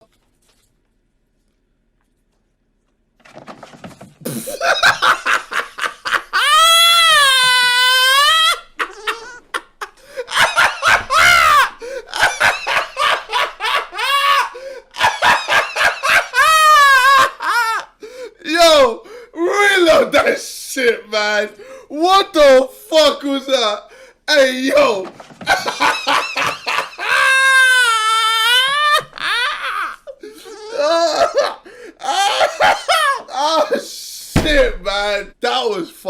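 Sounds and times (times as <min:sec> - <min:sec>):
man laughing hysterically: 0:04.2 - 0:18.0, 0:24.7 - 0:33.9.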